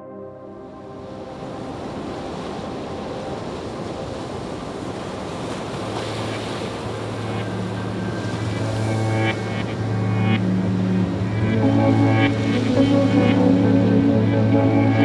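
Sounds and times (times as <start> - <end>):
steady rushing noise: 1.2 - 15.0
low hum: 6.2 - 15.0.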